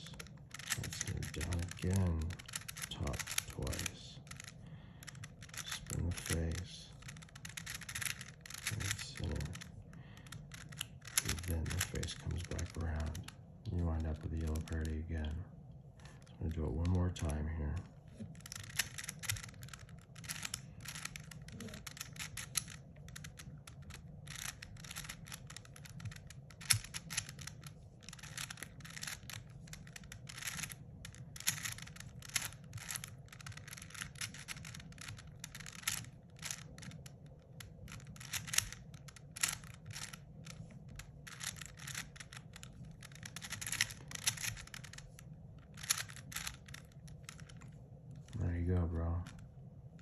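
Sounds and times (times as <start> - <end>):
low steady hum: 0.0 - 50.0
plastic cube clicking: 0.1 - 13.3, 18.3 - 47.7.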